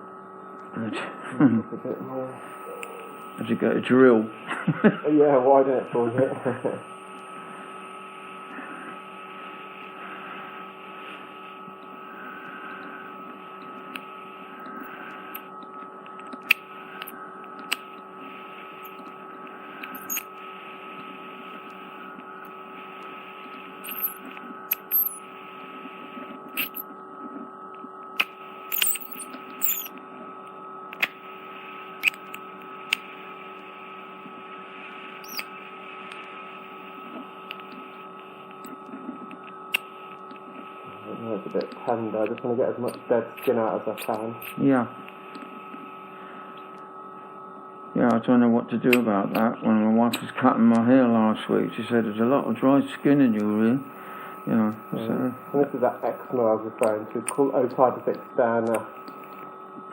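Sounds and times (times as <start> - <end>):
suction clicks and crackles: 13.6 - 18.1, 21.0 - 25.2, 28.2 - 31.2, 32.0 - 34.4, 41.5 - 45.5.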